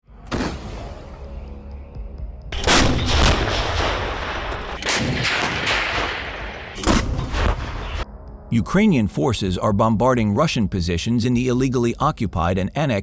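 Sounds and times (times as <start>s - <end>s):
artillery blasts: 2.6s - 8.0s
artillery rumbling: 2.6s - 8.0s.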